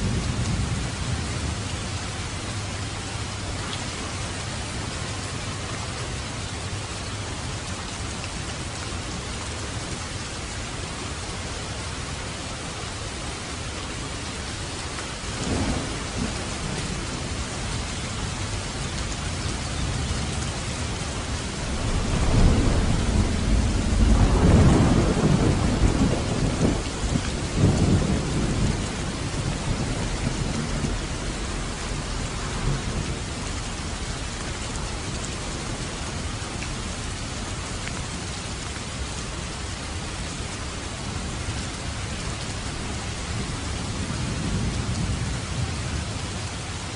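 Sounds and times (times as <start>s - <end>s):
steady rain falling: 0.0s - 46.9s
thunder rumbling: 15.2s - 37.0s, 42.7s - 46.6s.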